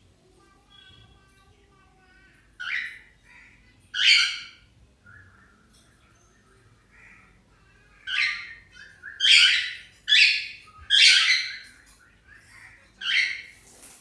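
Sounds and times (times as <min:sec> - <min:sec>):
cockatiel squawking: 0:08.0 - 0:11.6.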